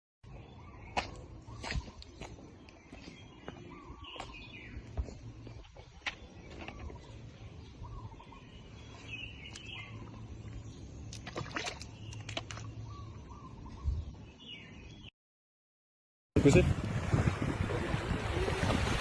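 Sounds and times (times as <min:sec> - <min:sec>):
birds chirping: 0:00.2 - 0:15.1
low outdoor rumble: 0:03.7 - 0:14.4.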